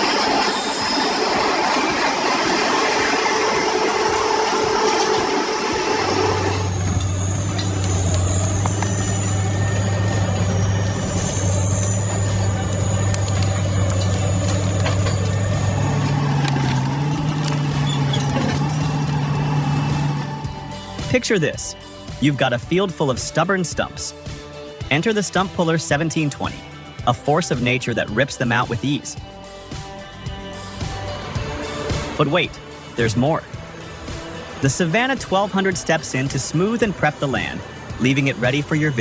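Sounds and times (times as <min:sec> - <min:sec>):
engine drone: 0:00.0 - 0:21.2, 0:29.4 - 0:39.0
high whine: 0:00.0 - 0:22.0
machinery grinding and squealing: 0:00.0 - 0:24.1, 0:24.9 - 0:39.0.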